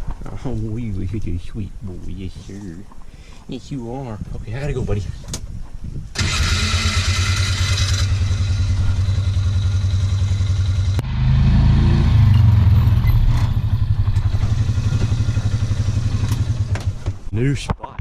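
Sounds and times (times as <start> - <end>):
vehicle engine droning: 6.2 - 17.3.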